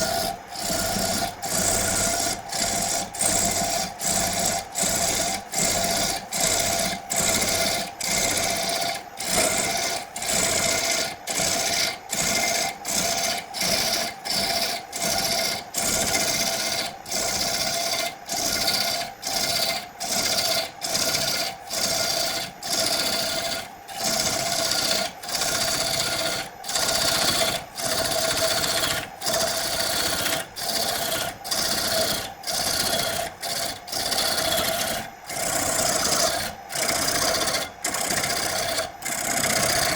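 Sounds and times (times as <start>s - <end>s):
hand tool rasping wood: 17.4s - 39.9s.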